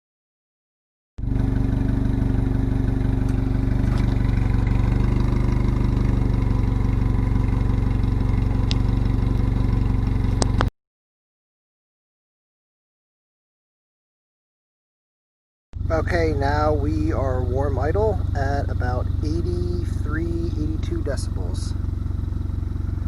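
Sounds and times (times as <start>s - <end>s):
car engine idling: 1.2s - 10.7s, 15.8s - 23.0s.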